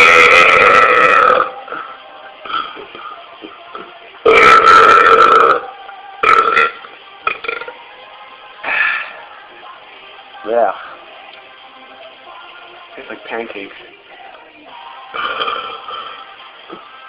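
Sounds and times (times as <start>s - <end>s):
man burping: 0.0s - 1.6s, 4.3s - 7.7s, 15.2s - 16.2s.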